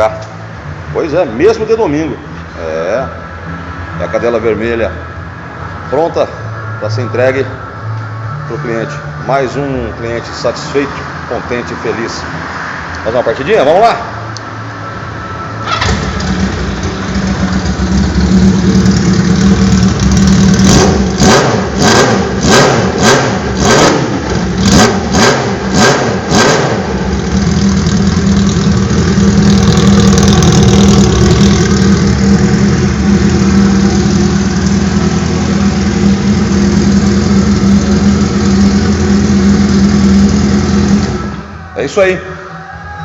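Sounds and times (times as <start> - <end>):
engine throttle blips: 14.2 - 41.7
motorcycle engine starting and idling: 15.6 - 41.5.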